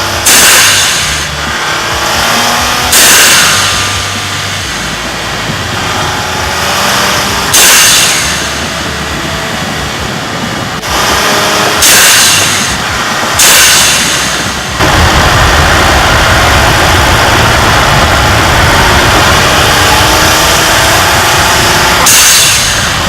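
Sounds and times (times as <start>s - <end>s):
car engine on the road: 0.0s - 23.0s
blow-off valve hisses: 0.2s - 1.7s, 11.0s - 19.9s.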